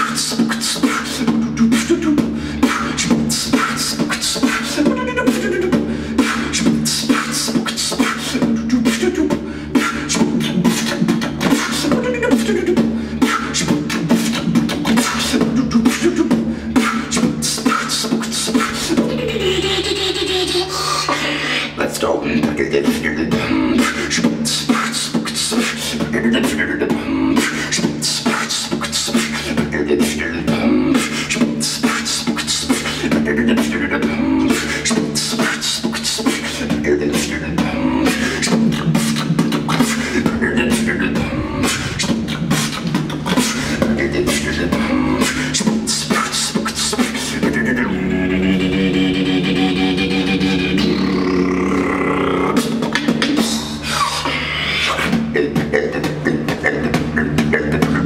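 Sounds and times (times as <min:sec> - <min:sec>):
held pitched vocal sound: 0:00.0 - 0:58.0
human beatboxing: 0:00.0 - 0:58.0
steady low hum: 0:00.0 - 0:58.0.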